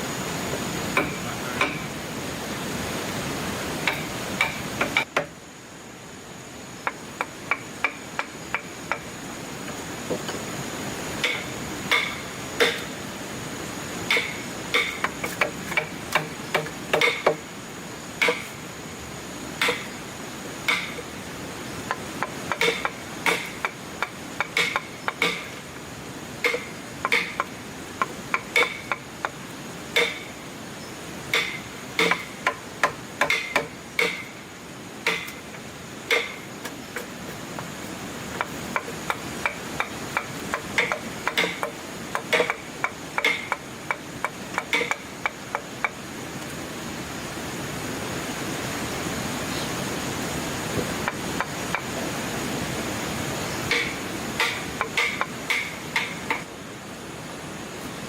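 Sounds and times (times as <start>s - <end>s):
hammer strikes: 1.0s - 1.9s, 3.8s - 5.3s, 11.2s - 12.9s, 14.1s - 17.4s, 18.2s - 18.5s, 20.7s - 21.0s, 22.2s - 25.6s, 26.4s - 27.5s, 30.0s - 30.3s, 31.3s - 34.3s, 35.0s - 35.5s, 36.1s - 37.1s, 38.4s - 45.7s, 53.7s - 56.5s.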